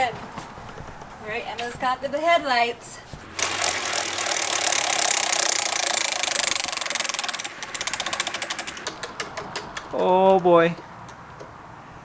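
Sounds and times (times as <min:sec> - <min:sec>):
prize wheel ticking: 0:03.1 - 0:11.2.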